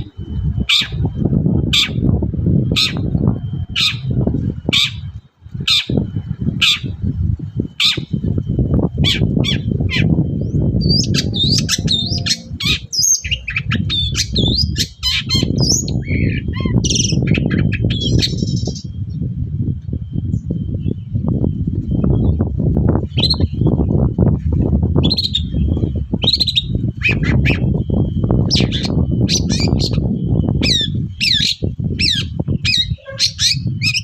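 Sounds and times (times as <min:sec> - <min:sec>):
low rumble: 0:00.0 - 0:17.2
bird harsh calls and song: 0:00.0 - 0:19.3, 0:20.0 - 0:34.0.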